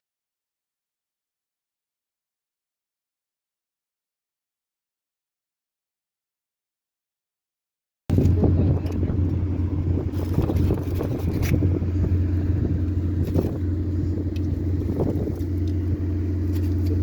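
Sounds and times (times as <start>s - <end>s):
car engine and road noise: 8.1s - 17.0s.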